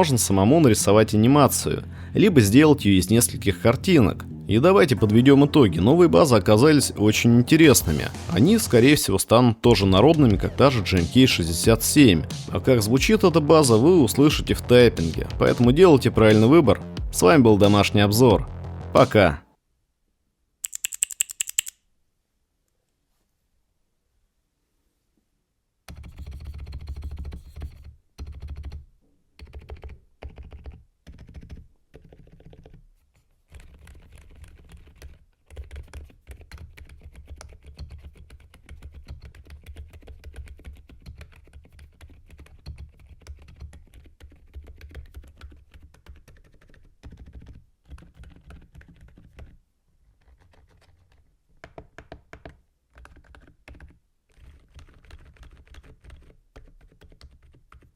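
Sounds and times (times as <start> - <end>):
mechanical keyboard typing: 20.6 - 21.8, 25.9 - 28.8, 29.4 - 32.8, 33.6 - 49.6, 50.2 - 57.9.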